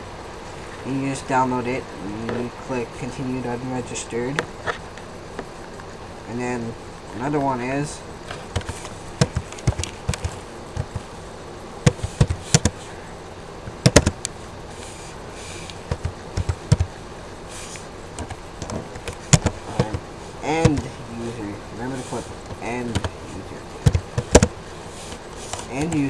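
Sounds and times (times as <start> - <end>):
low steady background hum: 0.0 - 26.0
computer keyboard and mouse clicks: 8.3 - 11.1, 11.8 - 12.9, 13.7 - 14.4, 15.6 - 17.0, 17.6 - 21.0, 22.1 - 26.0.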